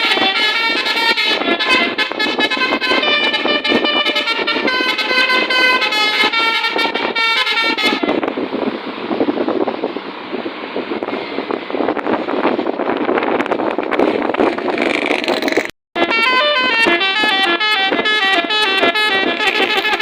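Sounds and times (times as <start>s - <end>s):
multi-tone bus horn melody: 0.0s - 8.3s, 16.0s - 20.0s
steady rushing noise: 0.0s - 20.0s.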